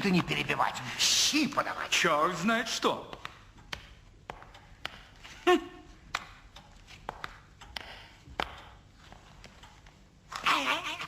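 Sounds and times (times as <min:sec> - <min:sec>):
light taps and clicks: 0:03.0 - 0:05.4, 0:06.1 - 0:10.1.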